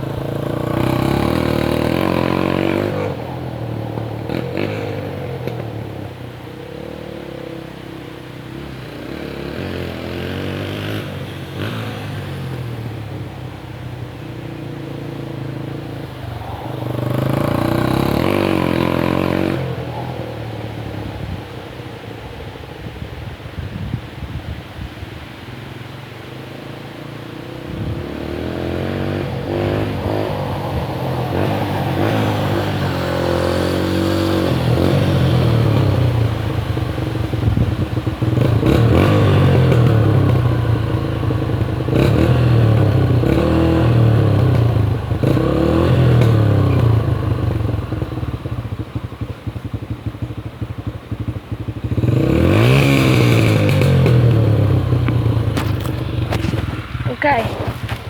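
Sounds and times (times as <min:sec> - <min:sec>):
dirt bike engine revving: 0:00.0 - 0:03.2, 0:15.6 - 0:20.0, 0:27.7 - 0:48.1, 0:51.6 - 0:58.0.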